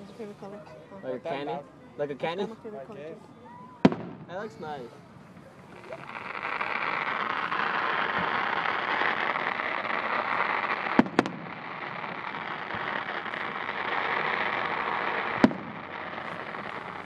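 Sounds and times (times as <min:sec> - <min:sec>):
fireworks bangs: 0:03.7 - 0:17.0
steady hiss: 0:04.4 - 0:17.0.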